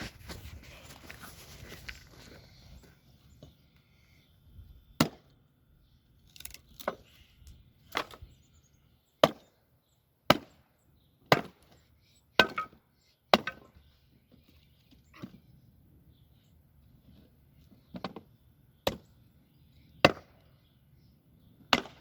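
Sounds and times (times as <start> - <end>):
wood splitting strikes: 5.0 - 5.3, 6.3 - 7.1, 7.9 - 8.2, 9.2 - 9.4, 10.3 - 10.6, 11.3 - 11.7, 12.4 - 13.7, 20.0 - 20.4, 21.7 - 22.0.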